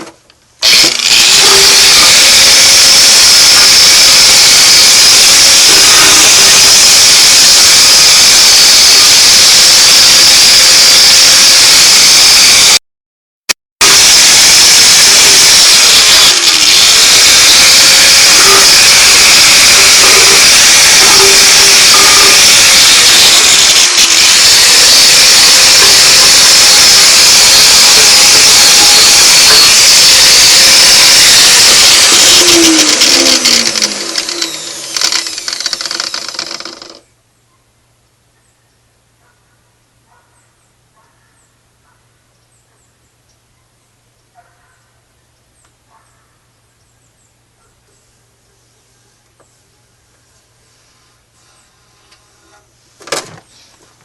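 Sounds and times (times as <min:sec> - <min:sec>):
power grinder grinding metal: 0:00.6 - 0:12.8, 0:13.8 - 0:37.0.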